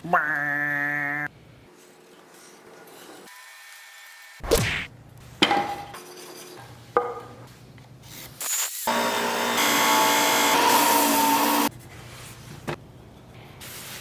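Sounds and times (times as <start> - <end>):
wood and tools knocking: 7.0 - 7.4.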